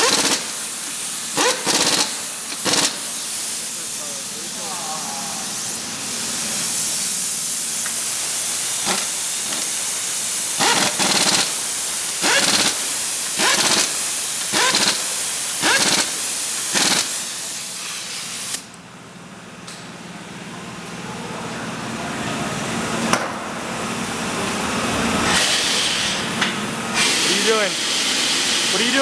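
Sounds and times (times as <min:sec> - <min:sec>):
compressed air hissing: 0:00.0 - 0:18.7, 0:25.2 - 0:29.0
short air spurts: 0:00.0 - 0:18.7, 0:25.2 - 0:29.0.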